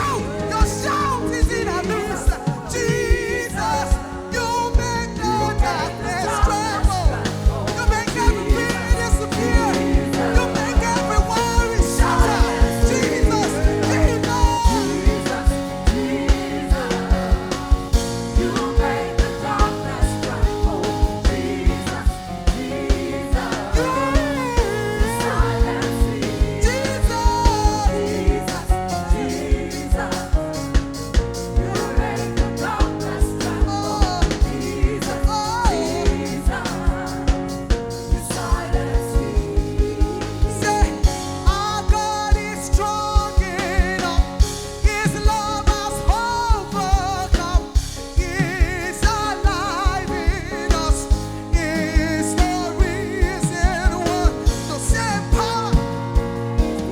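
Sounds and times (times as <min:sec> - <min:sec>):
person singing: 0:00.0 - 0:17.7, 0:18.3 - 0:30.2
band holding chords: 0:00.0 - 0:56.9
drum kit beat: 0:00.0 - 0:56.9.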